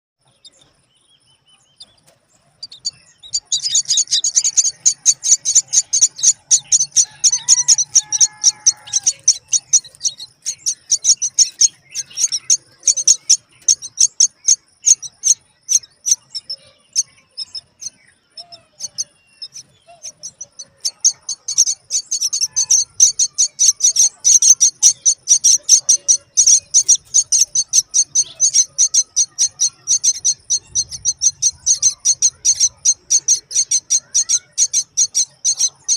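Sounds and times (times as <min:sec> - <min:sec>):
nestlings high begging chirps: 0:00.2 - 0:35.9
lower sliding bird calls: 0:02.7 - 0:16.6.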